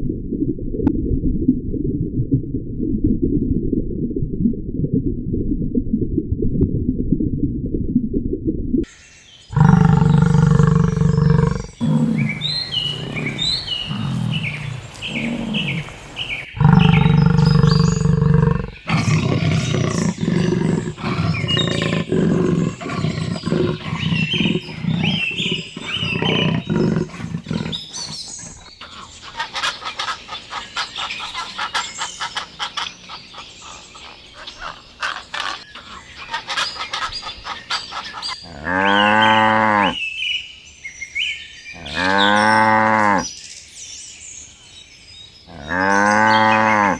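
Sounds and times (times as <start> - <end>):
long low-pitched animal calls: 9.5 - 28.7.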